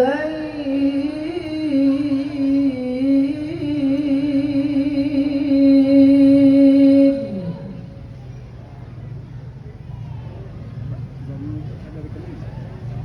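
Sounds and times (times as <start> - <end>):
person reciting melodically: 0.0 - 8.0.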